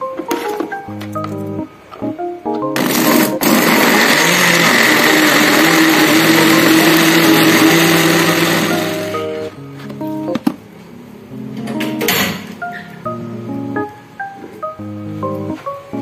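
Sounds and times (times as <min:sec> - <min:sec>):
blender motor whine: 0:02.8 - 0:09.2.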